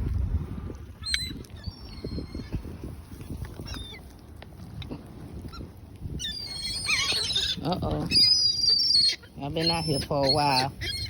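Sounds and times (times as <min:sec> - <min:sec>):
birds calling: 0:06.2 - 0:11.0.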